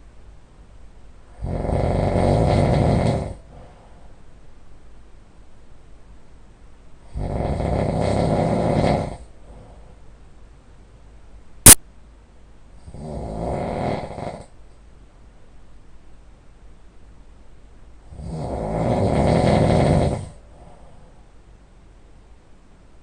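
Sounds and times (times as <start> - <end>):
person snoring: 1.4 - 3.7, 7.1 - 9.8, 12.8 - 14.5, 18.1 - 21.0
sharp click: 11.6 - 11.8.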